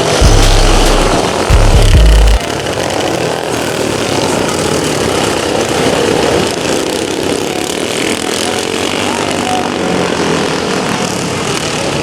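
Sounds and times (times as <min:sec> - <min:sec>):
lawn mower engines racing: 0:00.0 - 0:12.0
loud low rumble: 0:00.1 - 0:02.4.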